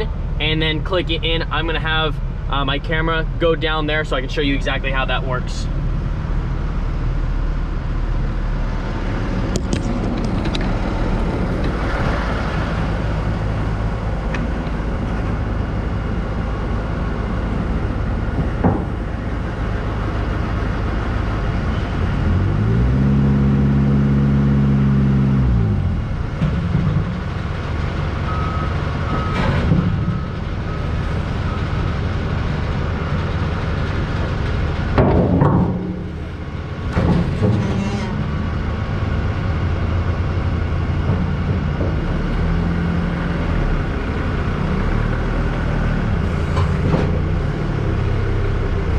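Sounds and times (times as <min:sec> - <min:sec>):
forklift engine idling: 0:00.0 - 0:48.9
sharp clicks and knocks: 0:09.5 - 0:11.8.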